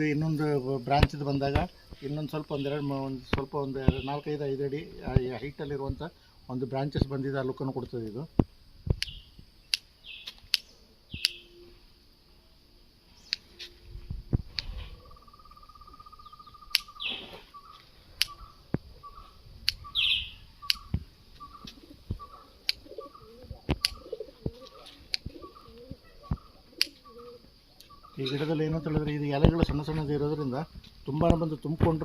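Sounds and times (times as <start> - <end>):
birds chirping and calling: 0.9 - 6.0, 9.0 - 11.5, 14.6 - 32.0
sharp clicks: 7.8 - 11.4, 16.7 - 17.1, 18.2 - 18.9, 19.6 - 22.9, 23.7 - 27.0
bird trilling: 11.1 - 11.6, 14.9 - 29.4.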